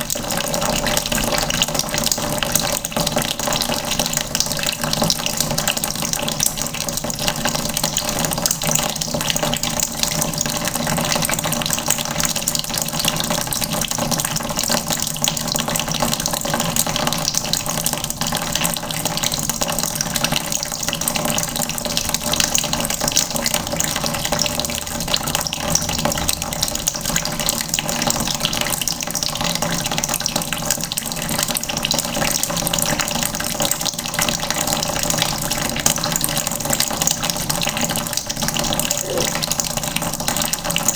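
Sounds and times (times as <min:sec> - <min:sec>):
tap water running into bucket: 0:00.0 - 0:40.9.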